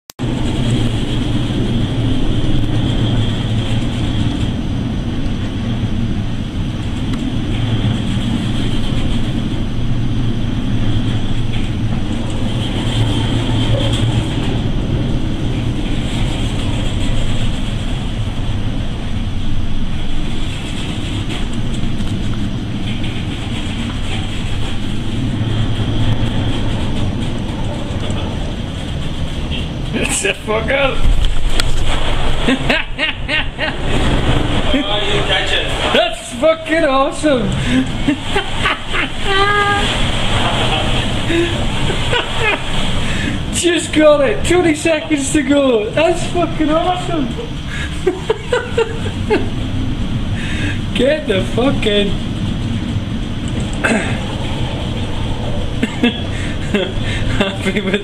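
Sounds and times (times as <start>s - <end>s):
rushing wind: 0.1s - 58.0s
sea noise: 0.2s - 58.0s
ship engines droning: 0.2s - 58.0s.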